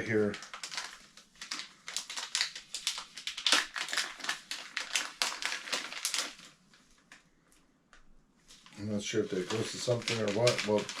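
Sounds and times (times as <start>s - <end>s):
packaging rustling and crinkling: 0.0s - 7.3s, 8.4s - 11.0s.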